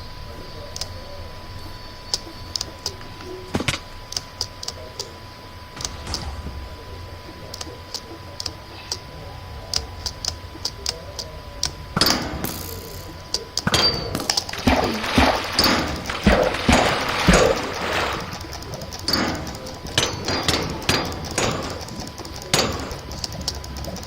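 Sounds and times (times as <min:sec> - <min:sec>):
faint steady tone: 0:00.0 - 0:24.0
sharp clicks and taps: 0:02.1 - 0:04.8, 0:07.5 - 0:09.0, 0:09.7 - 0:24.0.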